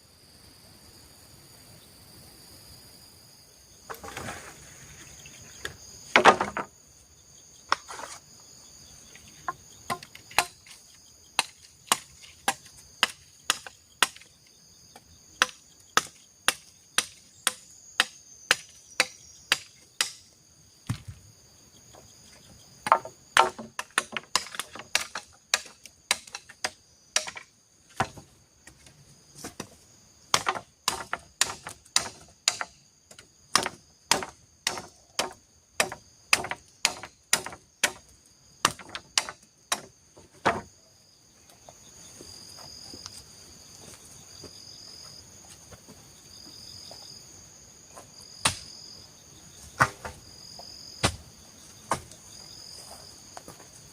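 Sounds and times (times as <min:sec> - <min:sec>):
insects chirping: 0:00.0 - 0:53.9
wood being chopped: 0:06.1 - 0:06.7, 0:09.9 - 0:10.8, 0:11.4 - 0:14.3, 0:15.4 - 0:21.2, 0:22.8 - 0:28.8, 0:30.3 - 0:38.0, 0:38.6 - 0:40.7, 0:48.4 - 0:48.7, 0:49.8 - 0:50.2, 0:51.0 - 0:51.2, 0:51.8 - 0:52.2.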